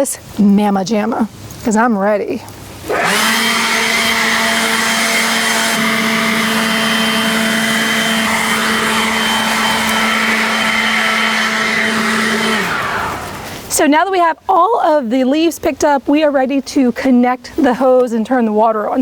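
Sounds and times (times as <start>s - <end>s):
leaf blower running: 2.8s - 13.7s.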